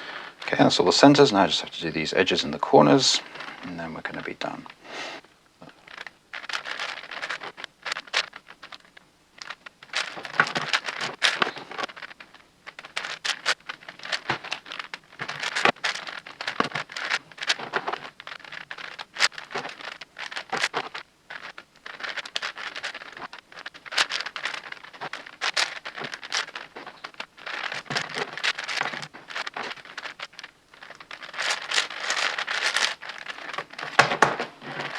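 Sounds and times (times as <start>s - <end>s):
puzzle cube clicking and rattling: 5.6s - 34.9s.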